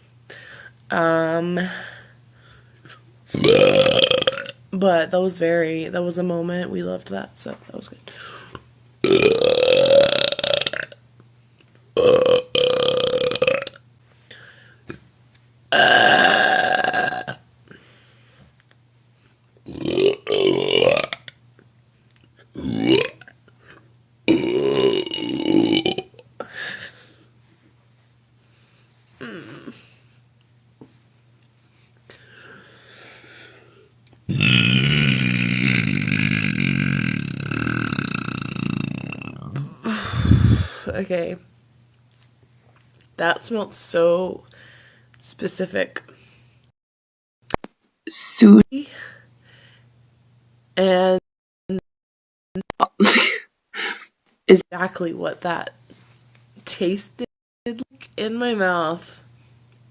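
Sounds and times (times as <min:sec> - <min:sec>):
woman burping: 0:03.3 - 0:04.5, 0:09.0 - 0:10.9, 0:12.0 - 0:13.7, 0:15.7 - 0:17.4, 0:19.7 - 0:21.3, 0:22.6 - 0:23.2, 0:24.3 - 0:26.1, 0:29.2 - 0:29.8, 0:34.3 - 0:41.0, 0:52.6 - 0:54.1
woman belching: 0:03.3 - 0:04.6, 0:09.0 - 0:11.0, 0:12.0 - 0:13.8, 0:15.7 - 0:17.4, 0:19.7 - 0:21.3, 0:22.6 - 0:23.3, 0:24.3 - 0:26.2, 0:29.2 - 0:29.8, 0:34.3 - 0:40.9, 0:52.8 - 0:54.1.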